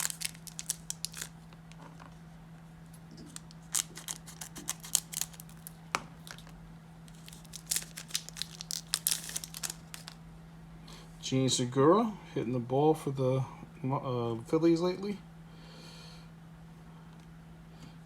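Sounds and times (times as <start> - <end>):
foil wrapper tearing and crinkling: 0.0 - 1.5, 3.3 - 6.5, 7.1 - 10.2
cards being handled: 0.0 - 2.0, 3.2 - 6.5, 7.1 - 10.2
faint steady hum: 0.0 - 18.0.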